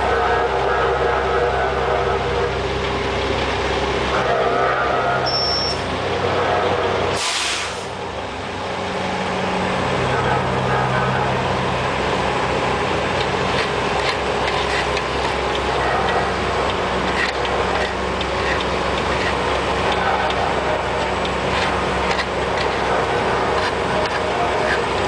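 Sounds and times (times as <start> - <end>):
diesel truck engine running: 0.0 - 25.0.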